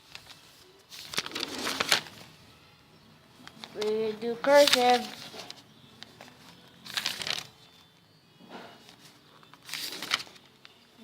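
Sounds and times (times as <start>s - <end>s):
notebook pages rustling: 0.0s - 2.4s, 3.4s - 7.8s, 8.8s - 10.8s.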